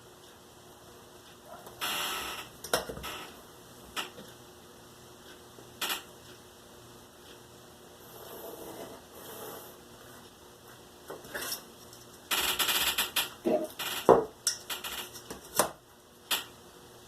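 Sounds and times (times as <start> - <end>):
sharp clicks and knocks: 12.3 - 16.6.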